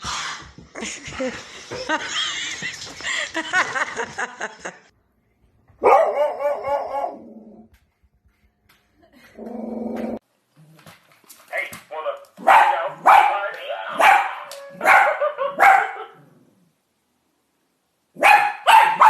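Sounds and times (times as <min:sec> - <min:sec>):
dog barking and yipping: 0:05.8 - 0:07.3, 0:12.4 - 0:16.2, 0:18.2 - 0:19.0.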